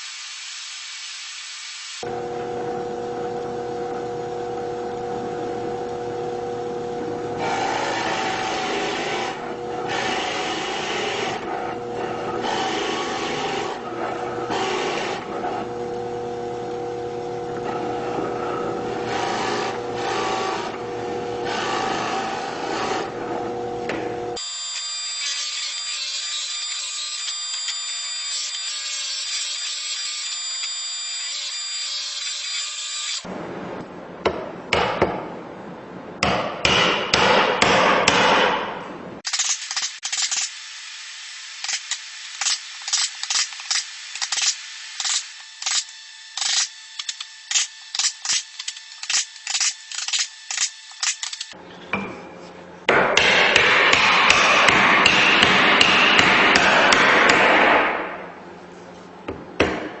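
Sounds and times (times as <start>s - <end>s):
loud grinding noise: 2.0s - 33.3s.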